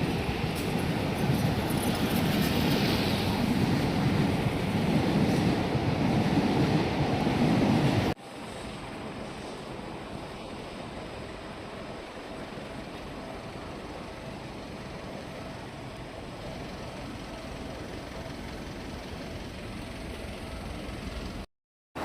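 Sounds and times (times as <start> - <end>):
traffic noise: 0.0 - 22.0.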